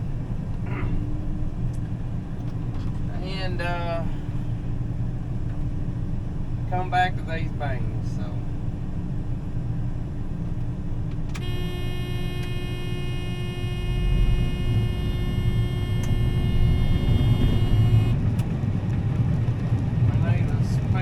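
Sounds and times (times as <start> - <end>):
combine harvester rumbling: 0.0 - 21.0
buzzer-like warning tone: 11.4 - 18.2.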